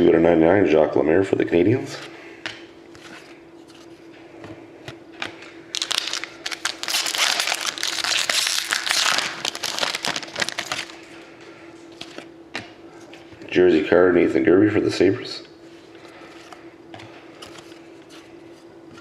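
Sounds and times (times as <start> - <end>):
faint steady hum: 0.0 - 19.0
foil wrapper crinkling: 5.7 - 11.1.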